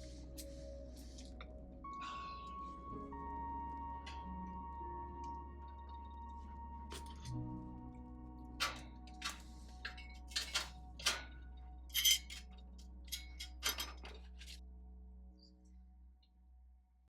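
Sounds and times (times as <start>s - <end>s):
low steady hum: 0.0s - 16.8s
faint background music: 0.0s - 17.0s
light clinks and clicks: 8.6s - 14.6s.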